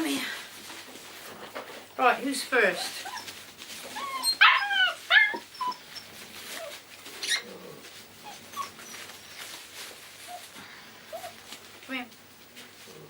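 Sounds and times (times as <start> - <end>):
puppy whimpering and yipping: 2.9 - 7.5, 8.2 - 9.6.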